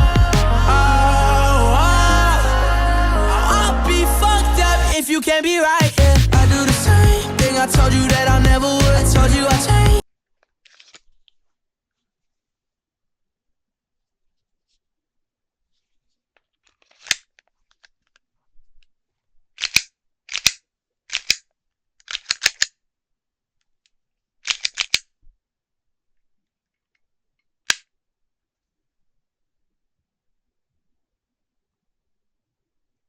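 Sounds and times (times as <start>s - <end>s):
plastic and metal pistol clicks: 19.6s - 22.8s, 24.4s - 25.2s, 27.7s - 27.9s.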